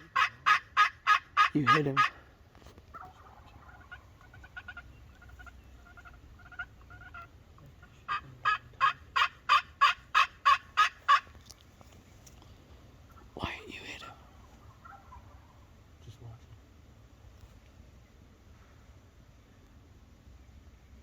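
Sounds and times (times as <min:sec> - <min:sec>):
turkey gobbling: 0:00.0 - 0:02.3, 0:02.9 - 0:11.4, 0:14.2 - 0:15.9.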